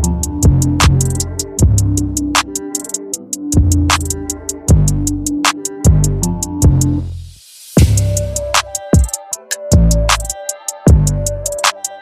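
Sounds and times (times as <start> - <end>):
deep bass notes: 0.0 - 2.5, 3.6 - 8.7
hi-hat ticks: 0.0 - 6.8, 7.5 - 12.0.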